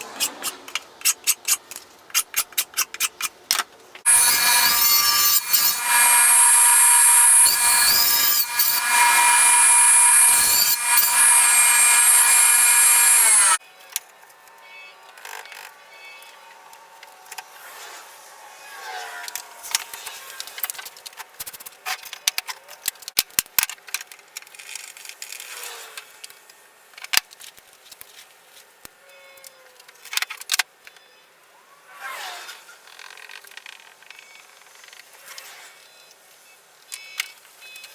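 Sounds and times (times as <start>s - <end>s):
power tool cutting: 4.1s - 13.6s.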